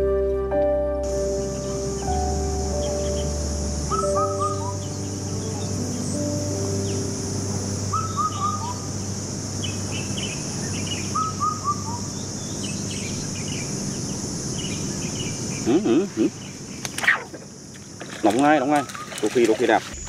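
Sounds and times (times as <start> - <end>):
steady high drone: 0.0 - 16.8
birds chirping: 1.1 - 20.0
bird calling falling notes: 3.9 - 6.8, 7.9 - 8.9, 18.7 - 19.2.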